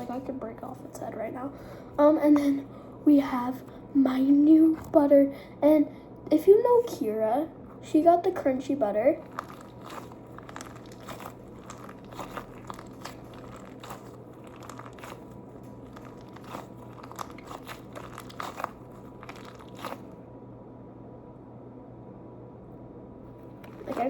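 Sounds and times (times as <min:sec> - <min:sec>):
squishy toy crackling: 0:09.1 - 0:20.2, 0:23.4 - 0:24.0.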